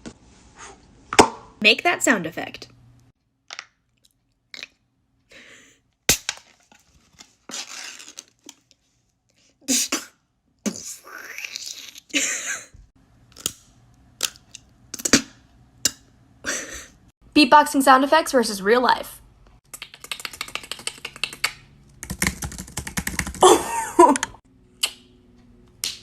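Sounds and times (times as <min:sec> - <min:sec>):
beatboxing clicks and crunches: 0:19.6 - 0:21.6.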